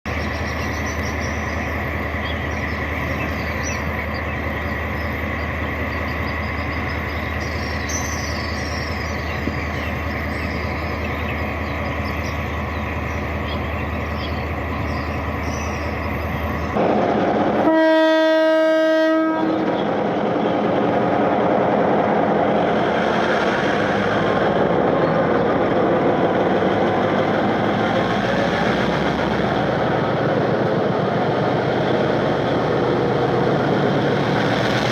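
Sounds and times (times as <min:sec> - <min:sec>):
locomotive horn blast: 0:17.6 - 0:19.7.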